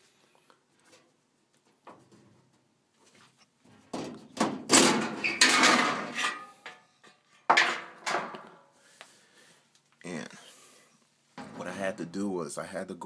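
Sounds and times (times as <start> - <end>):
metal panel rattling: 3.9 - 6.4, 11.4 - 11.9
sheet metal panel clanking: 3.9 - 6.5, 11.4 - 11.9.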